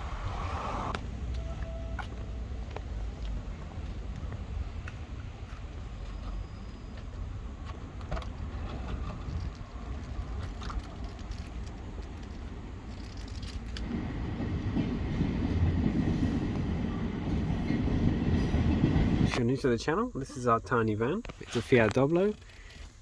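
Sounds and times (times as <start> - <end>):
train rumbling on rails: 0.0 - 20.0.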